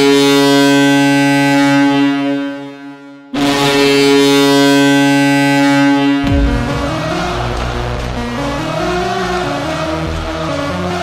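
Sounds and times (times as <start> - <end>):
arena goal horn blasts: 0.1 - 6.6.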